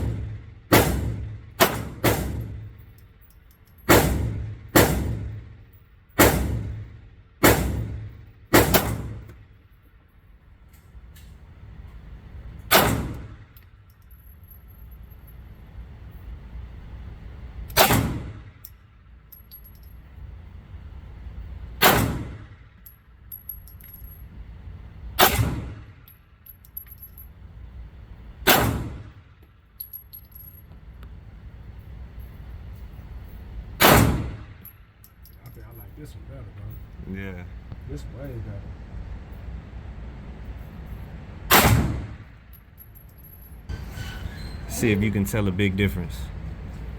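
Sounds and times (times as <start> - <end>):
pistol shots echoing indoors: 0.0 - 2.8, 3.9 - 5.5, 6.1 - 9.3, 12.7 - 13.6, 17.7 - 18.6, 21.8 - 22.8, 25.2 - 26.0, 28.4 - 29.3, 33.8 - 34.7, 41.5 - 42.4.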